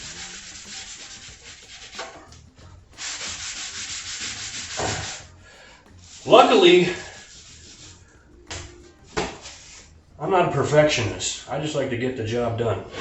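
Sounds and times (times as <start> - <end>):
wet rag rubbing plywood: 0.0 - 10.2.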